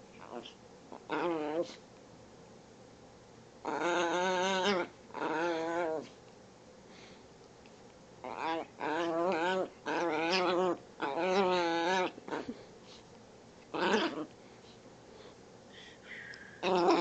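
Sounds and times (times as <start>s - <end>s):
small dog whining: 3.6s - 6.1s, 8.2s - 12.6s, 13.7s - 14.3s, 16.6s - 17.0s.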